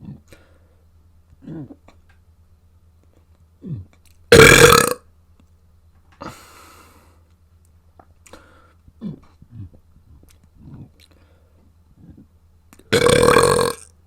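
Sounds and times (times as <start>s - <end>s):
person burping: 3.6s - 5.1s, 12.9s - 13.9s
small mouth sounds: 9.0s - 11.2s.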